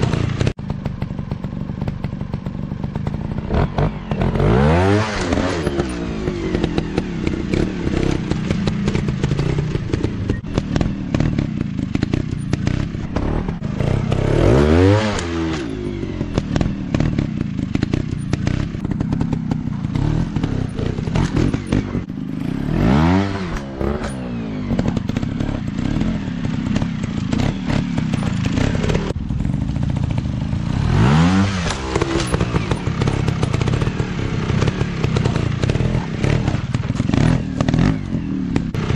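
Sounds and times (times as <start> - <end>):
sharp knocks and clatter: 0.0 - 22.1, 31.4 - 38.0
dirt bike engines revving: 0.0 - 38.9.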